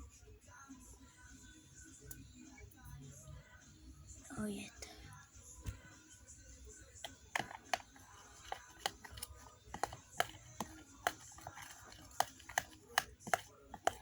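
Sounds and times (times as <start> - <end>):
spoon stirring in a bowl: 6.9 - 14.0.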